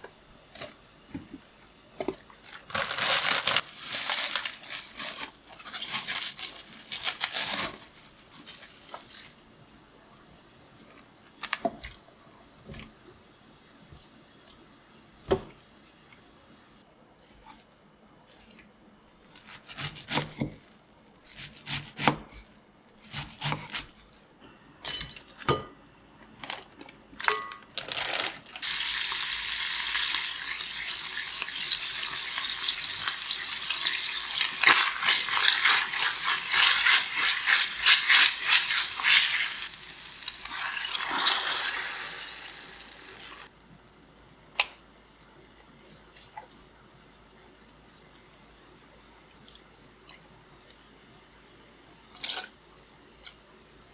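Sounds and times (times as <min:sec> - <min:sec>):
dishes and utensils clinking: 0:27.2 - 0:27.7.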